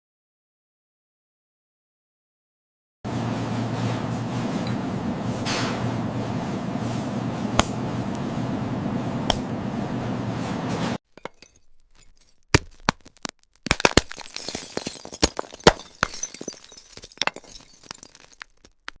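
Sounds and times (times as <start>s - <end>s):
crackles and glassy snaps: 11.4s - 14.3s.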